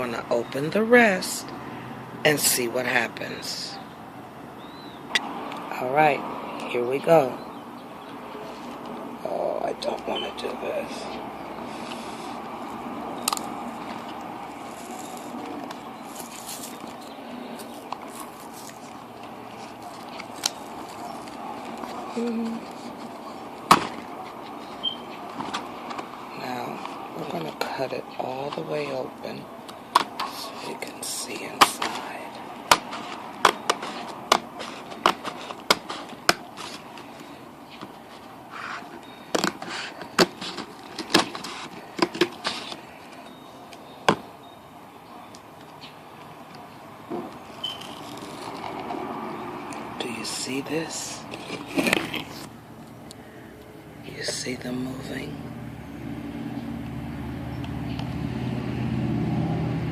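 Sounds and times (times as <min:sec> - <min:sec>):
cardboard box rustling: 0:11.6 - 0:27.5, 0:30.0 - 0:43.5, 0:50.3 - 0:52.6
box clicking: 0:32.7 - 0:37.9, 0:38.8 - 0:42.9.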